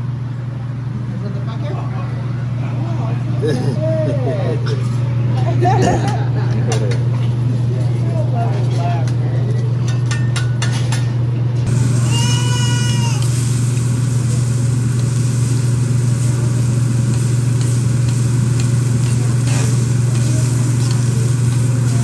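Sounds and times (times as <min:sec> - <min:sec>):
low hum with hiss: 0:00.0 - 0:22.0.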